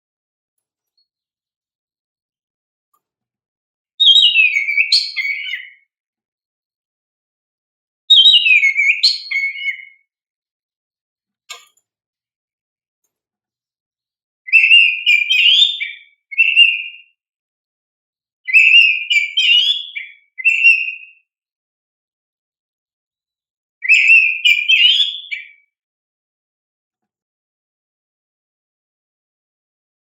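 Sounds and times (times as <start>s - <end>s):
bird singing whistled notes: 4.0s - 5.9s, 8.1s - 10.1s, 14.5s - 17.2s, 18.5s - 21.3s, 23.8s - 25.7s.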